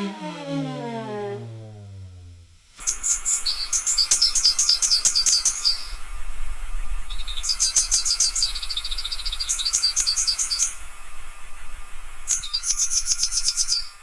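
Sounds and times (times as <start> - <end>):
faint steady hum: 0.0 - 14.0
small bird chirping: 2.8 - 6.1, 7.1 - 10.9, 12.3 - 14.0.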